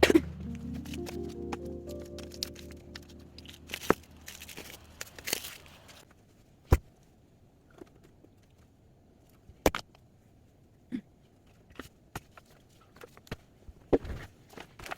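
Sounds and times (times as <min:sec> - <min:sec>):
rustling of handled objects: 0:00.4 - 0:06.4.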